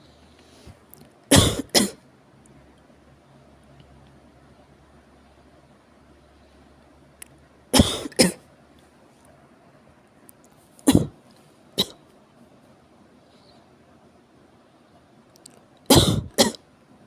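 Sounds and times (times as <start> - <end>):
person coughing: 1.3 - 2.0, 7.8 - 8.4, 10.9 - 11.2, 15.9 - 16.6.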